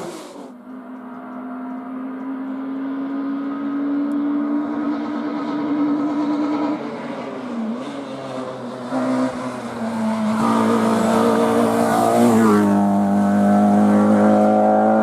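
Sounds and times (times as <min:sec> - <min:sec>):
rally car engine revving high: 0:00.0 - 0:15.0.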